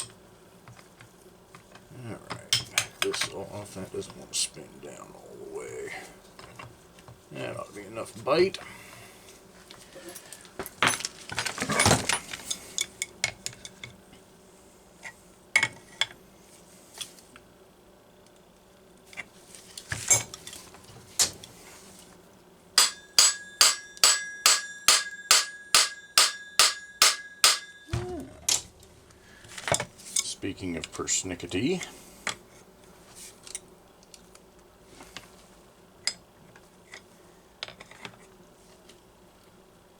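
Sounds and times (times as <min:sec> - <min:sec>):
hammer ringing on metal: 0:22.8 - 0:27.9.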